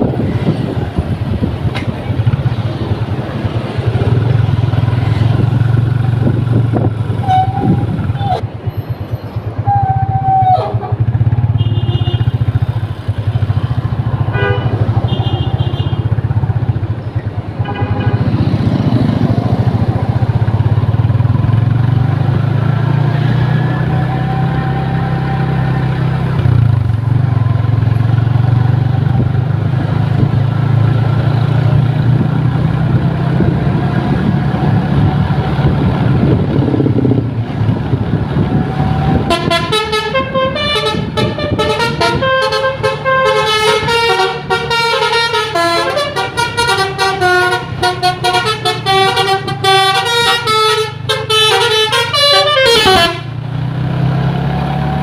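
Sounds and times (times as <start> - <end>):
diesel bus engines running: 0.0 - 55.0
short horn blasts: 7.2 - 8.4, 11.5 - 12.4, 14.3 - 16.0, 39.2 - 53.3
multi-tone musical horn: 39.2 - 53.3.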